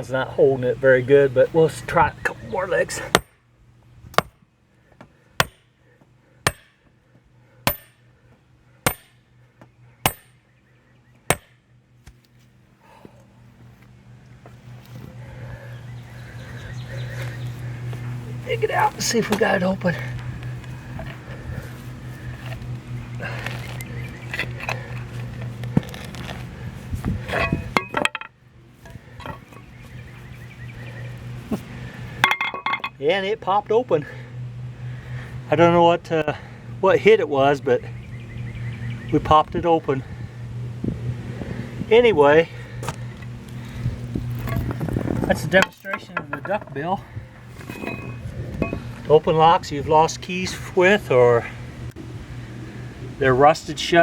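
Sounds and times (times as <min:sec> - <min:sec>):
sledgehammer striking metal: 0:03.1 - 0:03.4, 0:04.2 - 0:04.4, 0:05.4 - 0:05.7, 0:06.4 - 0:06.8, 0:07.6 - 0:08.0, 0:08.8 - 0:09.3, 0:10.0 - 0:10.4, 0:11.3 - 0:11.6
metal tool clinking and scraping padlock: 0:27.3 - 0:28.3, 0:45.6 - 0:46.9, 0:47.6 - 0:48.8
short ringing metal clinks: 0:47.7 - 0:48.8.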